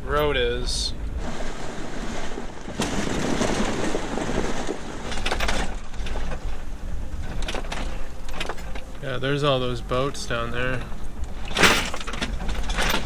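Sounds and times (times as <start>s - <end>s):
tyres crunching over gravel: 2.7s - 13.0s
car engine low rumble: 5.8s - 13.0s.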